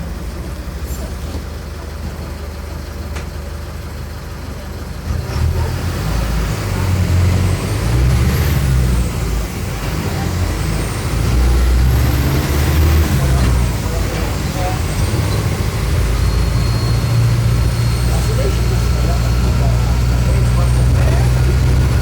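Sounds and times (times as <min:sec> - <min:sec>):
bus diesel engine pulling under load: 0:00.0 - 0:22.0
high whine rising with revs: 0:07.0 - 0:22.0.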